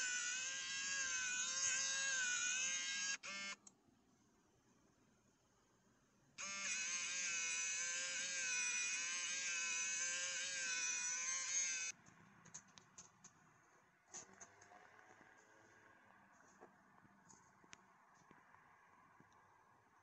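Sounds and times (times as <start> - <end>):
small motor whirring: 0.0 - 3.6, 6.4 - 12.0.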